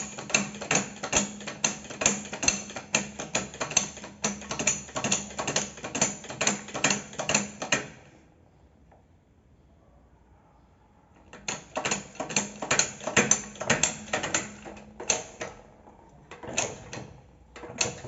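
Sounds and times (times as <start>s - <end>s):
bench vise clicking and clanking: 0.0s - 8.0s, 11.3s - 18.0s.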